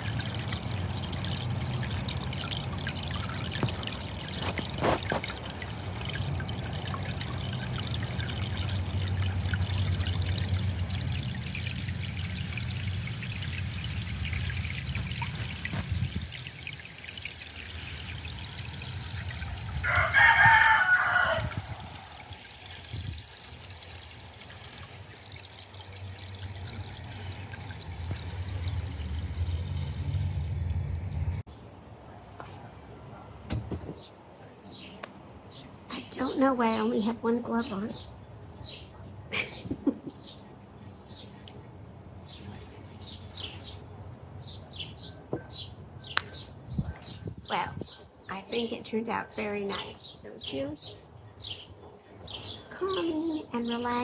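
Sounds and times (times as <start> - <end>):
fountain splashing and trickling: 0.0 - 31.4
rooster crowing: 19.6 - 22.4.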